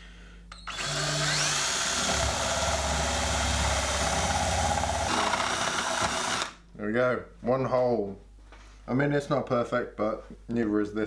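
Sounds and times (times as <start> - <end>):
power drill boring plastic: 0.6 - 6.6.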